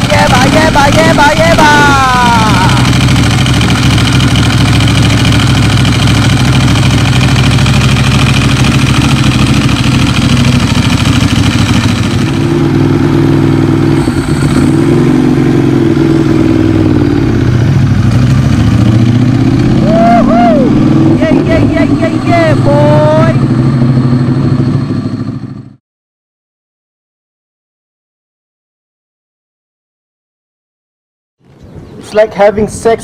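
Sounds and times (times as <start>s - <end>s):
motorcycle engine running: 0.0s - 25.8s.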